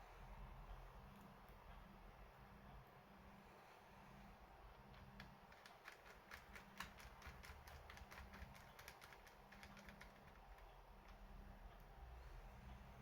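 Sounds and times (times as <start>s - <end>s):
keyboard key clicks: 4.9s - 10.7s.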